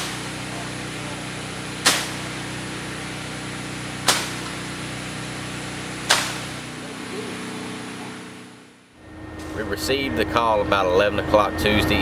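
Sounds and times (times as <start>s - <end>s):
sharp strikes: 0.0s - 1.1s, 1.7s - 3.0s, 4.0s - 5.0s, 6.0s - 8.8s
low mechanical hum: 0.0s - 12.0s.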